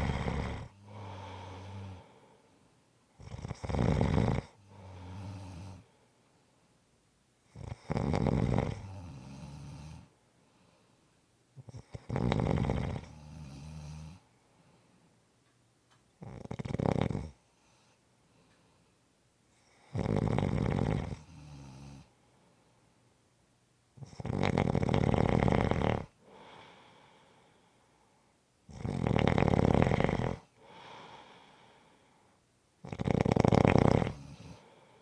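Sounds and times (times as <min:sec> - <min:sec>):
person snoring: 0:00.0 - 0:02.3, 0:03.2 - 0:05.9, 0:11.7 - 0:14.2, 0:19.9 - 0:22.1, 0:24.0 - 0:27.0, 0:28.7 - 0:31.9, 0:32.8 - 0:35.0.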